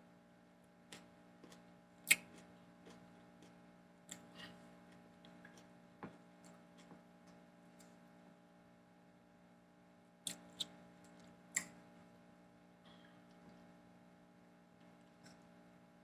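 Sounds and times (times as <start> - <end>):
chewing crunchy food: 0.9 - 5.8.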